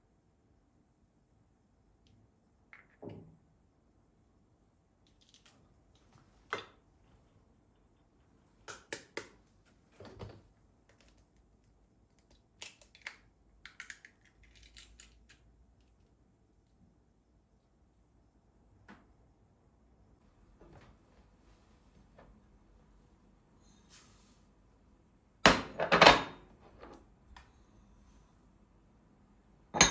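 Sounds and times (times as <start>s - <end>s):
small objects clicking and tapping: 5.0s - 5.6s, 8.6s - 9.8s, 10.8s - 16.1s.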